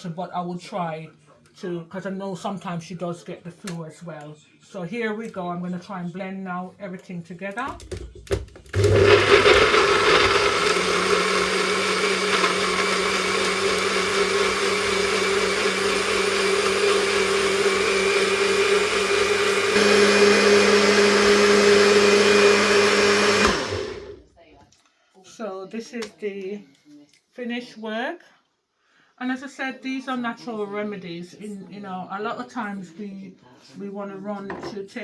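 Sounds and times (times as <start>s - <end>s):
blender running: 8.6s - 24.2s.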